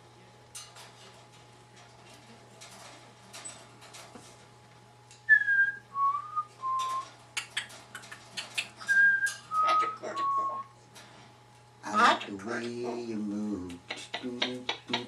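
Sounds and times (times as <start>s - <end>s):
quick clicks and rustles: 0.6s - 4.6s
cockatoo whistling a tune: 5.3s - 7.0s, 8.9s - 10.7s.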